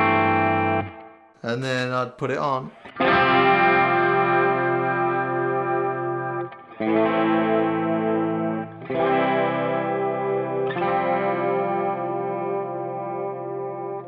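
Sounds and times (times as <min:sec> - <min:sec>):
electric guitar chords with chorus: 0:00.0 - 0:01.3, 0:02.7 - 0:14.0.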